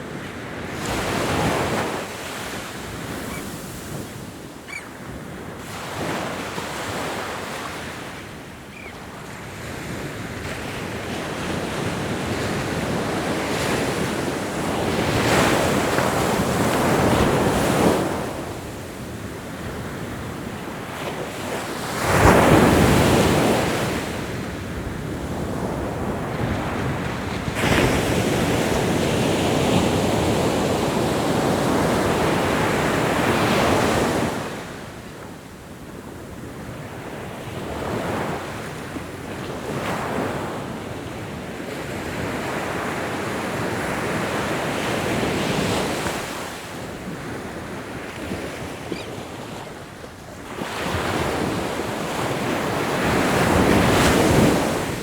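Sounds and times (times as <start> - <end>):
ocean waves breaking on shore: 0.0 - 55.0.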